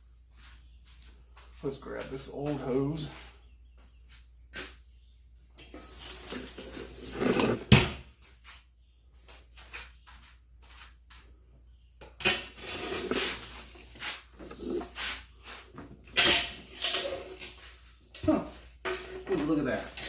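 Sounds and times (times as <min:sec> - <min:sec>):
hose and metal fittings rustling: 0:05.6 - 0:07.7, 0:12.2 - 0:20.0.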